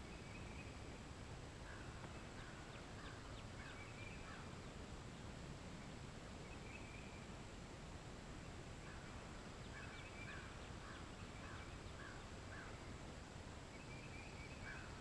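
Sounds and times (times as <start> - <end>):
steady low hiss: 0.0 - 15.0
bird calls: 1.6 - 4.7, 8.9 - 12.9, 13.7 - 15.0.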